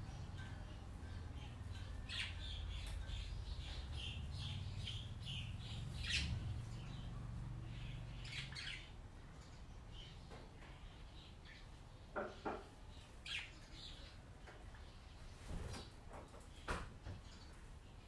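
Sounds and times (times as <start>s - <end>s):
low steady hum: 0.0s - 11.6s
small birds chirping: 0.0s - 18.0s.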